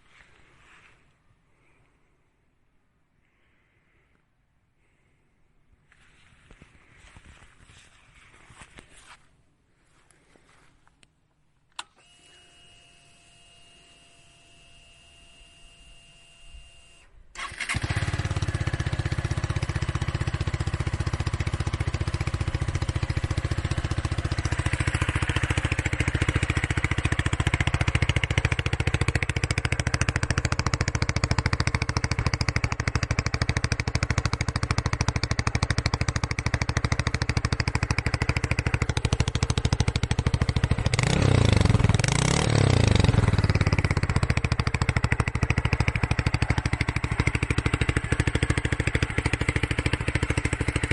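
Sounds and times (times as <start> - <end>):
motorcycle engine idling and revving: 13.5 - 50.9.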